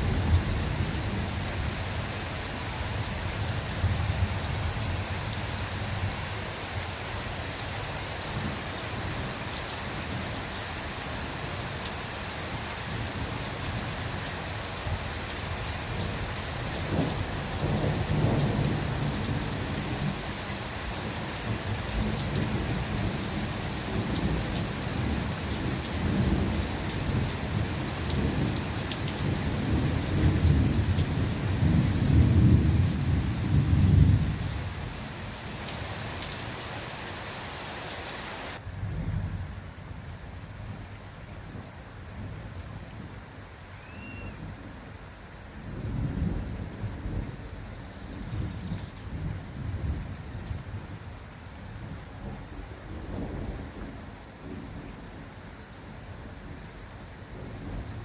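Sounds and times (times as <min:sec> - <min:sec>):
steady rain in a forest: 0:00.0 - 0:58.0
low thunder rumbling: 0:16.0 - 0:35.1, 0:45.6 - 0:51.0, 0:51.8 - 0:55.0.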